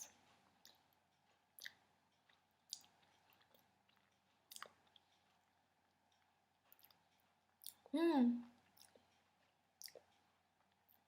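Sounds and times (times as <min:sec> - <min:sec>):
mouth clicks and smacks: 0:00.6 - 0:05.1, 0:07.6 - 0:07.9, 0:08.6 - 0:09.2, 0:09.8 - 0:11.0.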